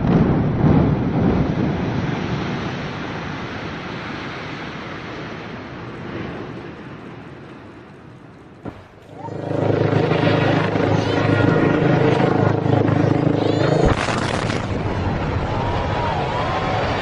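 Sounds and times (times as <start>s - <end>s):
building collapsing rumble: 0.0s - 17.0s.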